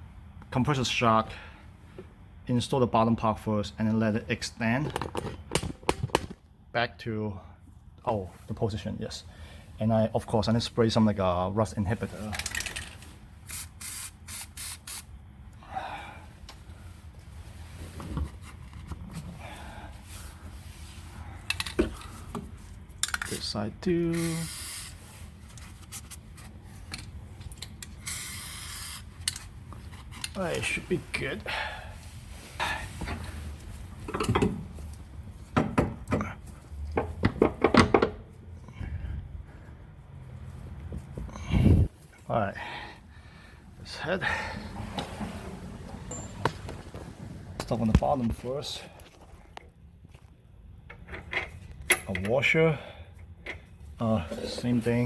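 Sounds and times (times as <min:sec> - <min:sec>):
tools and metal parts clattering: 0:12.2 - 0:13.6, 0:23.0 - 0:23.5, 0:45.0 - 0:47.3
aerosol can spraying: 0:13.5 - 0:15.1
handling noises: 0:44.3 - 0:50.4.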